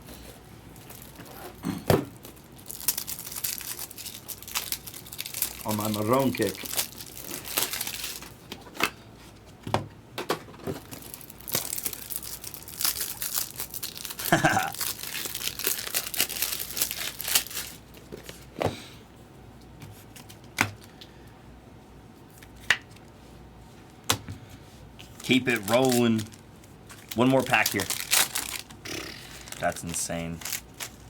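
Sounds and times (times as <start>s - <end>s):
foil wrappers tearing and crinkling: 2.2s - 8.4s, 10.8s - 17.9s, 25.2s - 31.0s.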